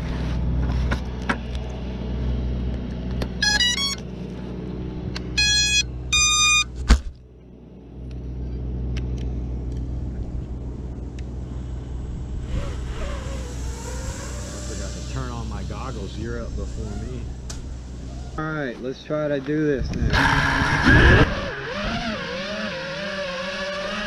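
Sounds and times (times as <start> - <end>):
electronic start-up beeps: 3.4 - 4.0, 5.4 - 6.7
low rumble: 4.0 - 20.2.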